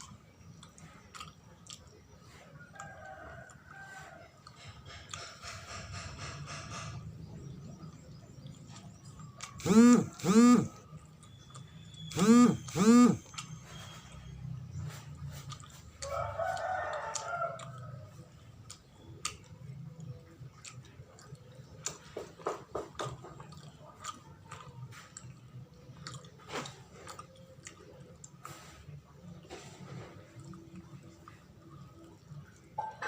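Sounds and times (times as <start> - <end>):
close-up chewing and mouth clicks: 0.0 - 33.0
rooster crowing: 2.7 - 4.3, 12.2 - 13.2, 16.0 - 18.0.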